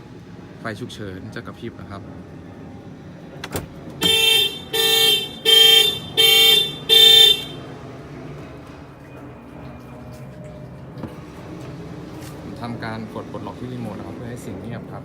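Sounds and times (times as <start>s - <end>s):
car horn alarm blasts: 4.0s - 7.7s.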